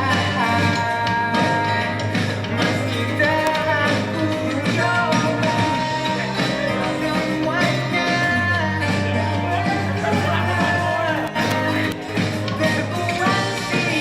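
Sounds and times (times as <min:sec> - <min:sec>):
steady bass: 0:00.0 - 0:14.0
sliding melody line: 0:09.0 - 0:14.0.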